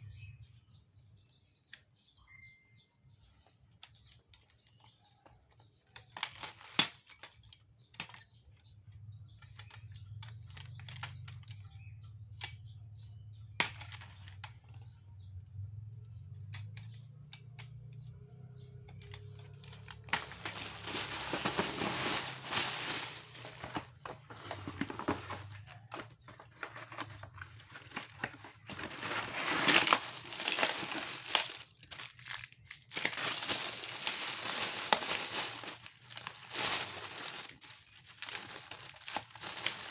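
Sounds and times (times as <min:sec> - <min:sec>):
wrapping crinkling and rustling: 0:06.1 - 0:07.4, 0:19.0 - 0:39.9.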